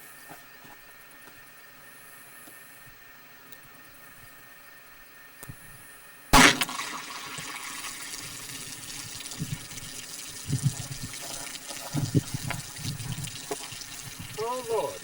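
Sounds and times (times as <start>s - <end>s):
gunshot: 6.4s - 7.0s
water pouring from plastic jugs: 6.4s - 15.0s.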